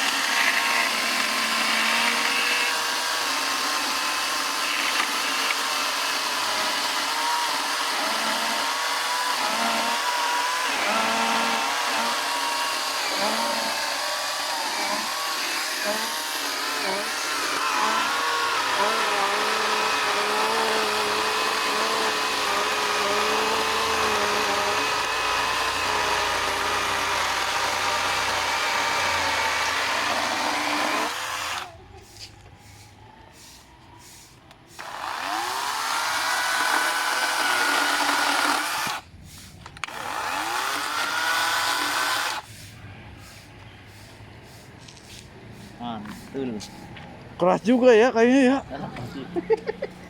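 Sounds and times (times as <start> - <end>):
chainsaw cutting wood: 0.0 - 31.8, 34.7 - 39.1, 39.7 - 42.5
electric motor whining: 0.0 - 31.8, 34.8 - 39.0.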